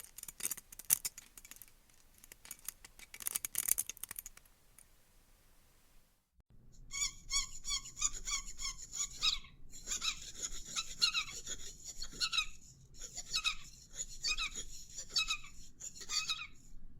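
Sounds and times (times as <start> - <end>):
cartoon squeaks: 6.9 - 16.6.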